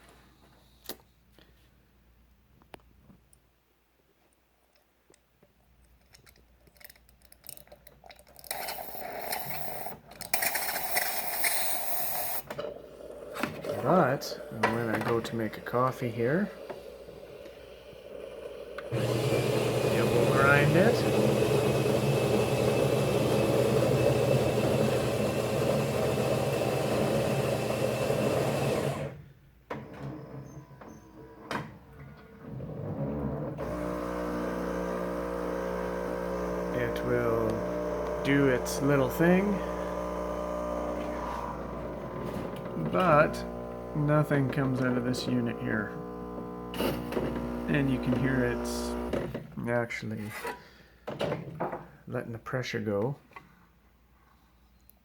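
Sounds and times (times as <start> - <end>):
coffee grinder whirring: 6.8 - 29.2, 33.6 - 49.4
steam hissing: 8.6 - 12.4.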